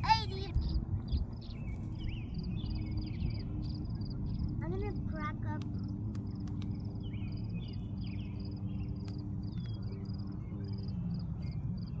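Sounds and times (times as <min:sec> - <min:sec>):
steady low rumble: 0:00.0 - 0:12.0
cricket chirping: 0:02.3 - 0:05.1, 0:05.8 - 0:12.0.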